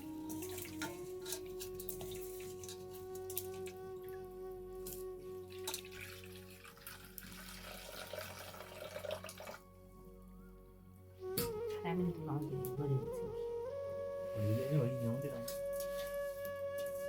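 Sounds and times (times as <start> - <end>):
faint steady musical tone: 0.0 - 17.0
water running and splashing: 5.5 - 9.6.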